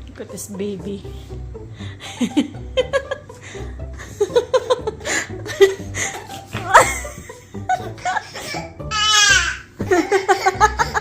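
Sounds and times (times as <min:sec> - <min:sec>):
person giggling and chuckling: 0:02.0 - 0:08.6, 0:09.8 - 0:11.0.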